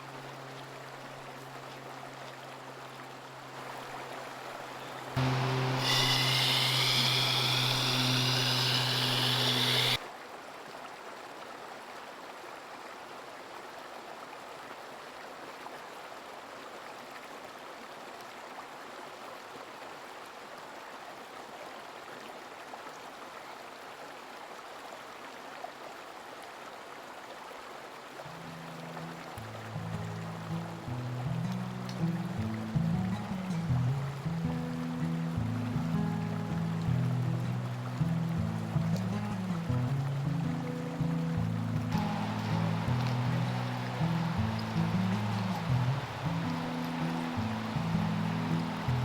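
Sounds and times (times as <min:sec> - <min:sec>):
stream water rushing: 0:00.0 - 0:49.0
hum with bright hiss: 0:04.8 - 0:10.0, 0:41.4 - 0:49.0.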